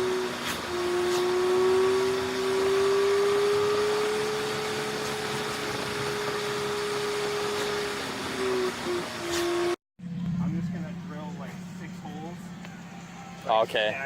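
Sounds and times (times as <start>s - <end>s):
motor whine: 0.0s - 10.4s.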